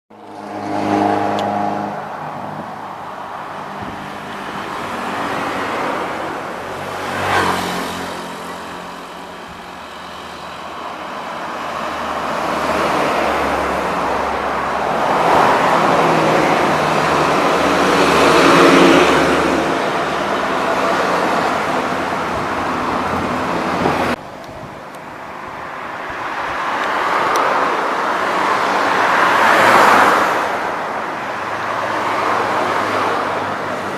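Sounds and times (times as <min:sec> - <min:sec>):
buses and road traffic passing: 0:00.1 - 0:33.9.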